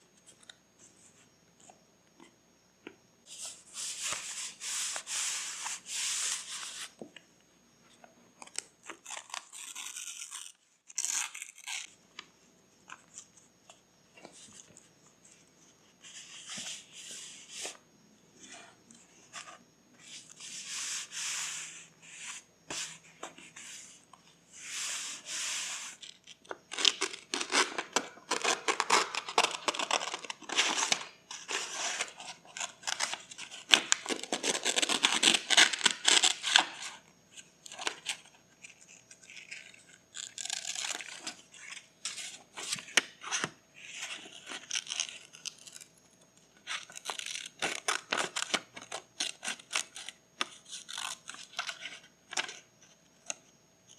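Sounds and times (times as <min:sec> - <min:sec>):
paper tearing and rustling: 0:08.9 - 0:11.9.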